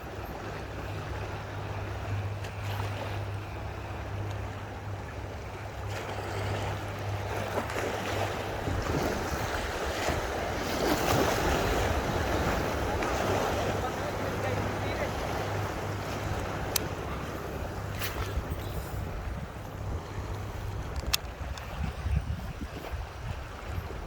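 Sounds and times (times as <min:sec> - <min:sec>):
low steady hum: 0:00.0 - 0:24.0
rushing splashing water: 0:05.4 - 0:19.1
wind buffeting microphone: 0:06.1 - 0:24.0.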